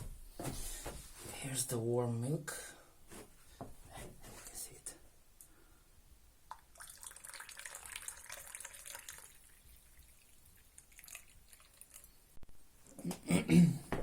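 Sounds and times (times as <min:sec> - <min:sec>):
milk pouring into a mug: 0:06.5 - 0:12.2.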